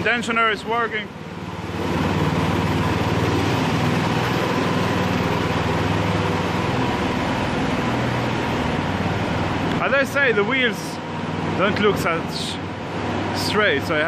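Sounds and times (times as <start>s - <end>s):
small kart engine running: 1.1s - 9.9s.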